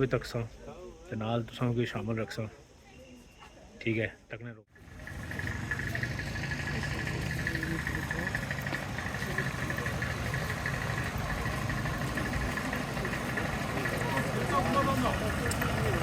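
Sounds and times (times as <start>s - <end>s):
car engine running: 4.8s - 16.0s.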